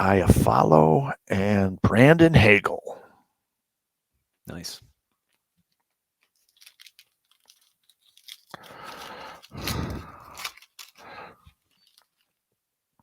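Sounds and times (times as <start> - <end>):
foil wrapper tearing and crinkling: 6.4 - 12.2
cards clicking: 6.5 - 12.2.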